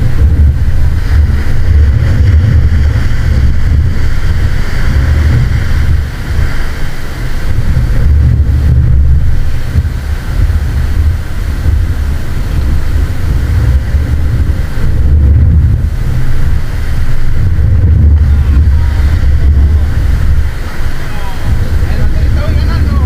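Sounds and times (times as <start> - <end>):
ocean surf hissing: 0.0 - 23.0
wind buffeting microphone: 0.0 - 23.0.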